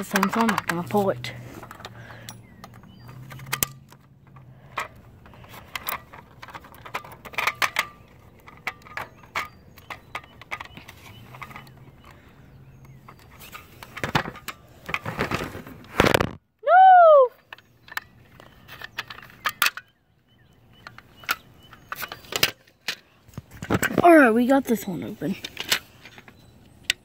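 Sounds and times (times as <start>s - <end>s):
metal clicks and clinks: 0.0s - 12.2s.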